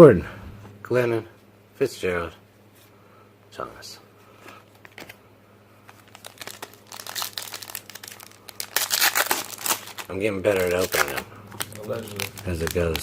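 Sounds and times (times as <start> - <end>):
card pack wrapper crinkling and ripping: 5.9 - 13.0.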